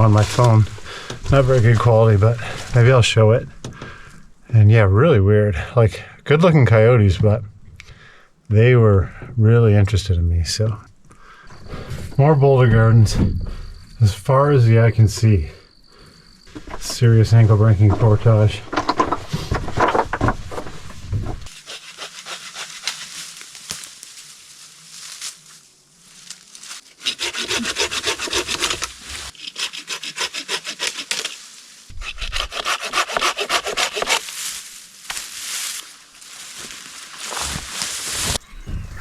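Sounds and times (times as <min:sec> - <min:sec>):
rhythmic rasping scrapes: 0:27.0 - 0:34.2.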